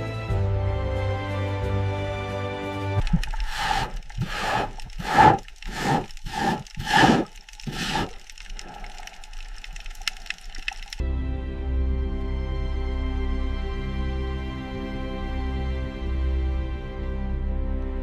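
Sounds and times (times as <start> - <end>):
rasping scraping strokes: 3.0 - 10.3.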